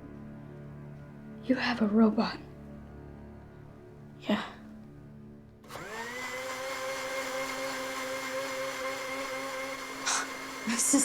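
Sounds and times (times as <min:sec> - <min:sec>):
hiss: 0:10.0 - 0:10.9
robot motor whirring: 0:10.0 - 0:11.0.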